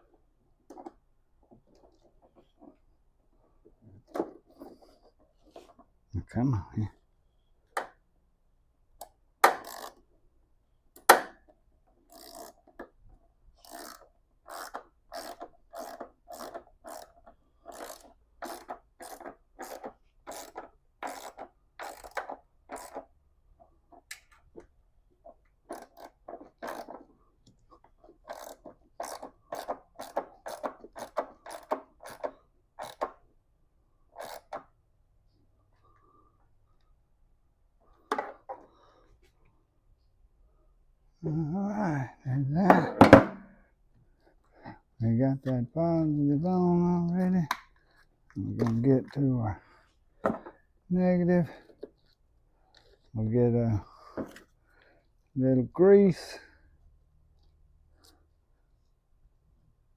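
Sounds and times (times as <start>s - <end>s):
ratchet wrench ratcheting: 9.4s - 10.0s, 12.0s - 13.0s, 13.6s - 23.1s, 25.7s - 27.1s, 28.0s - 33.2s, 34.1s - 34.7s
sharp metal knocks: 42.7s - 43.5s.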